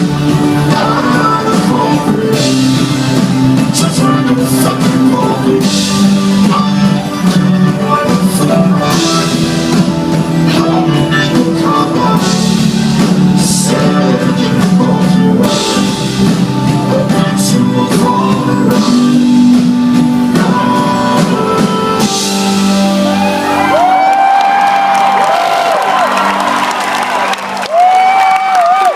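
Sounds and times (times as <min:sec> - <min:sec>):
live rock band playing: 0:00.0 - 0:28.9
crowd cheering: 0:22.9 - 0:28.9.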